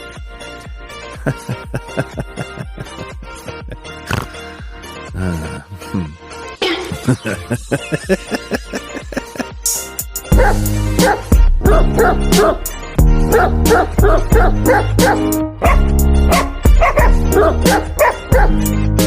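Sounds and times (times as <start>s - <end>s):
loud music with bass beat: 6.6s - 19.0s
dog yipping and barking: 10.4s - 12.6s, 13.3s - 18.6s.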